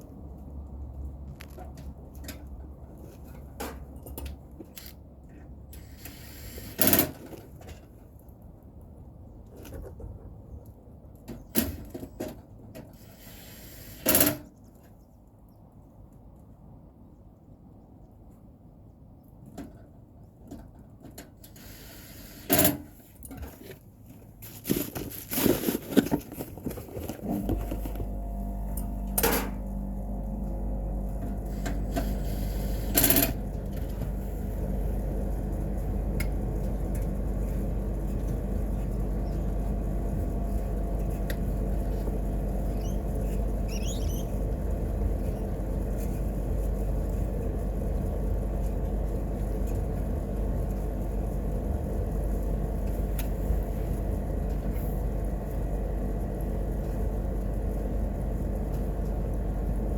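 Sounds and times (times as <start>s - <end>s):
electric machine hum: 27.2s - 59.9s.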